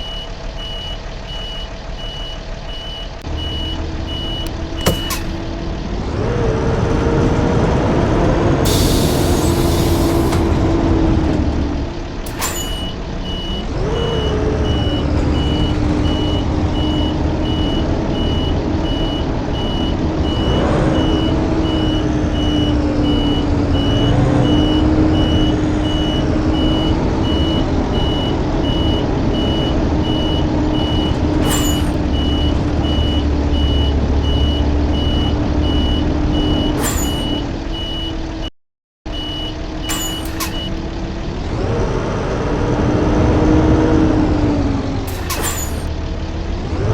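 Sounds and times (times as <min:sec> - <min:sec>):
bus engine droning: 0:00.0 - 0:38.5, 0:39.1 - 0:46.9
sharp clicks or knocks: 0:04.4 - 0:05.5
high electronic beep: 0:12.3 - 0:13.6, 0:28.8 - 0:38.1, 0:39.1 - 0:40.8.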